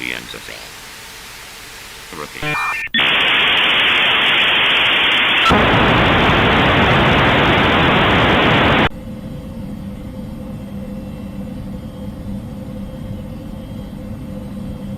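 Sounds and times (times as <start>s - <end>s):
loud hissing static: 0.0s - 8.9s
steady hum: 0.0s - 8.9s.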